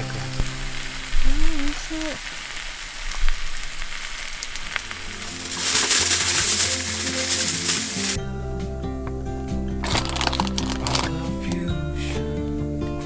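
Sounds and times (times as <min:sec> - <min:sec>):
music: 0:00.0 - 0:01.7, 0:04.8 - 0:13.0
food sizzling in a skillet: 0:00.0 - 0:08.2.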